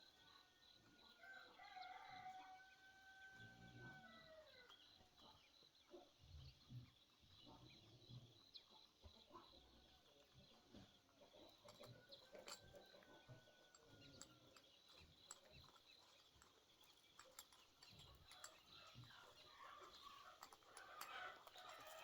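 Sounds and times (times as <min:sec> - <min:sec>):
rooster crowing: 0:01.2 - 0:04.5.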